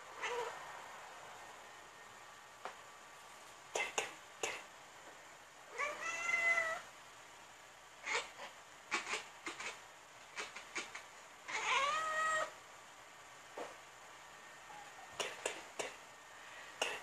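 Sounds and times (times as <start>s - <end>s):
cat chirping: 0.2s - 0.6s, 5.7s - 6.8s, 8.0s - 12.5s.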